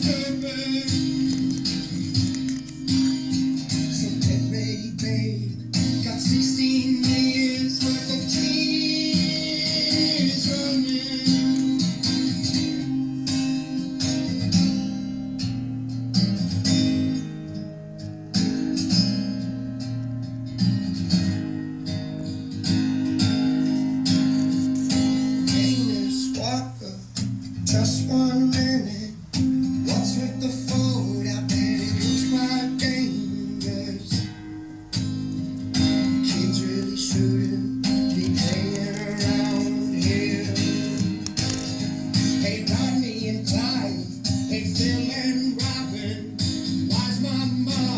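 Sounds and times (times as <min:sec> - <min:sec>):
young man singing: 0:00.0 - 0:14.6, 0:24.8 - 0:34.4, 0:35.8 - 0:47.9
acoustic guitar strumming chords: 0:00.0 - 0:47.9.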